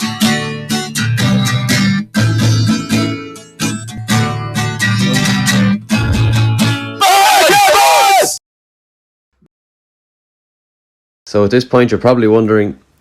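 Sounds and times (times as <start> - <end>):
strummed acoustic guitar: 0.0 - 7.0.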